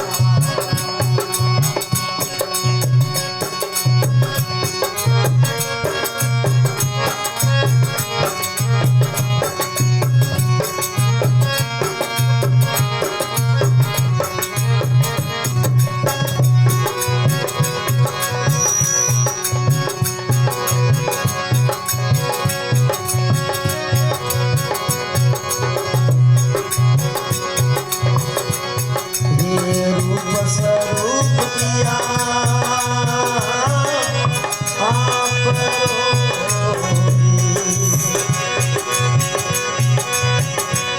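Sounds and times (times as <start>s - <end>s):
melodic instrument lines: 4.4s - 32.0s, 34.9s - 40.9s
hand drum beat: 7.8s - 33.3s.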